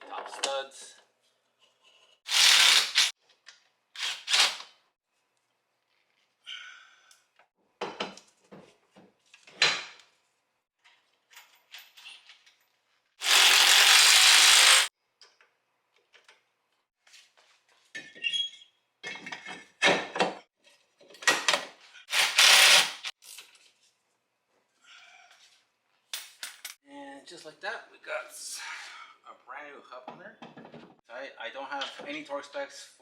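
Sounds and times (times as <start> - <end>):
impact wrench burst: 2.3 - 3.1, 13.2 - 14.9, 22.1 - 23.1.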